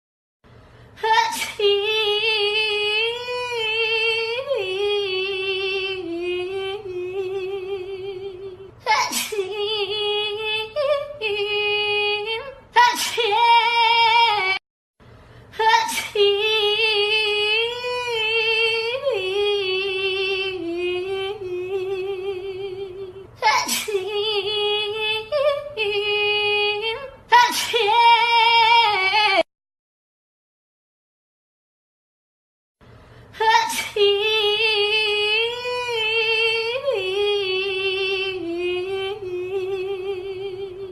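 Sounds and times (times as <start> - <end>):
high voice singing with vibrato: 1.0 - 14.6, 33.4 - 40.9.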